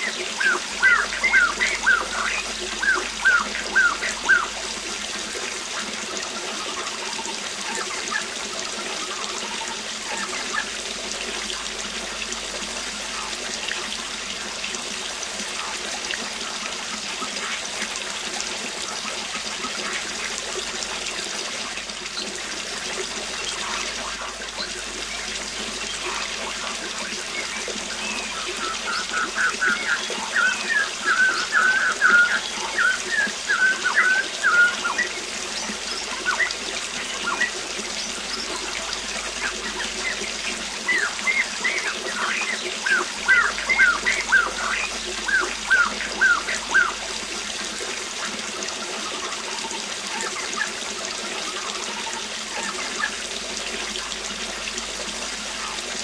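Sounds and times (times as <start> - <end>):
rapid bird chirps: 0.0 - 4.6
birds calling: 0.0 - 12.2, 22.0 - 47.3
waterfall running: 0.0 - 56.0.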